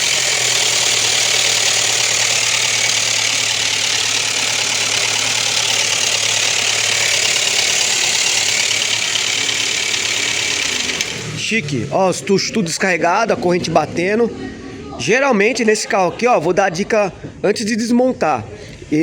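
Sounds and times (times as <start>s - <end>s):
engine idling with metallic clatter: 0.0s - 12.5s.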